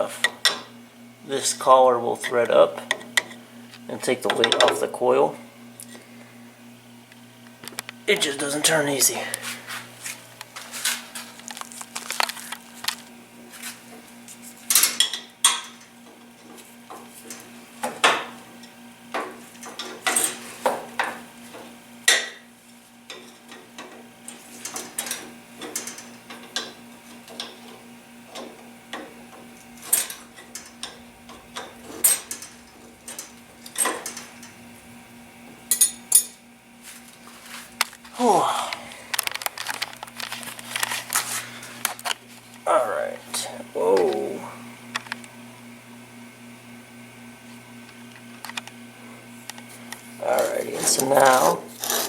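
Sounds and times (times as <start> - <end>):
metal tools clinking and scraping: 29.8 - 34.6, 35.7 - 36.4.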